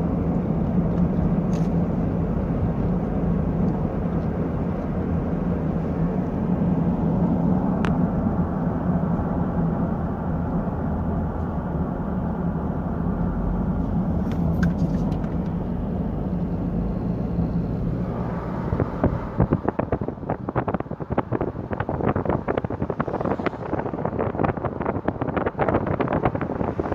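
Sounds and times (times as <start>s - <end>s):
vehicle engine low rumble: 0.0s - 26.9s
sharp clicks and knocks: 14.2s - 15.6s.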